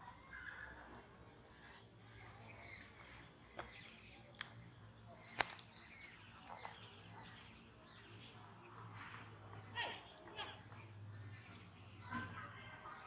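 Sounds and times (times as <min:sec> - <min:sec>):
birds chirping: 0:00.0 - 0:13.0
sharp clicks: 0:05.2 - 0:05.8.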